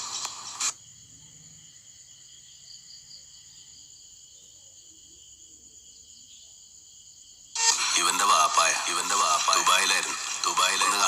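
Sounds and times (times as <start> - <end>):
crickets chirping: 0.1 - 11.0.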